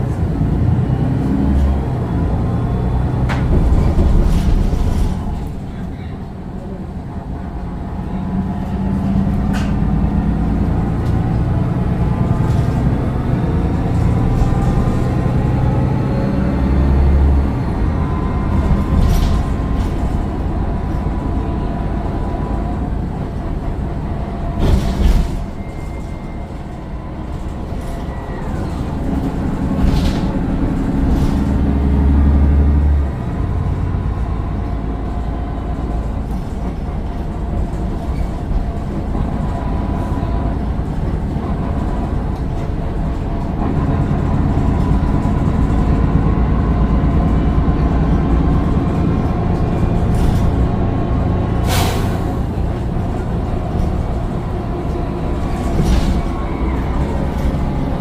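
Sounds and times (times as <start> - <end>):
bus diesel engine: 0.0 - 58.0
bus body knocks: 3.2 - 5.5.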